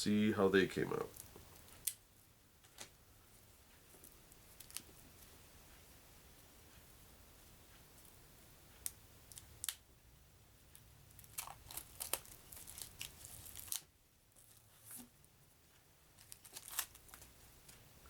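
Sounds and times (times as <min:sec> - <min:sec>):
playing cards snapping and rustling: 0:11.3 - 0:13.8, 0:16.2 - 0:17.3.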